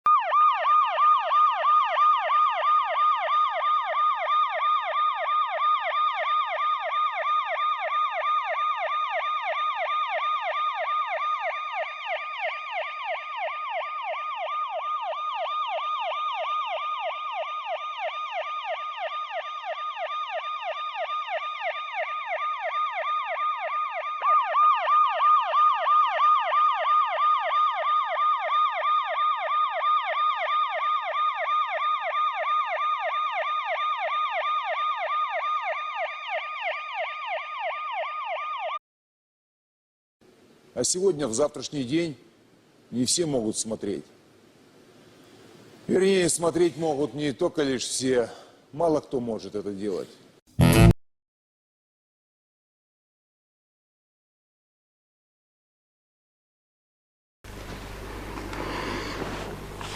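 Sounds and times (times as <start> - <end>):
siren yelping: 0.1 - 38.8.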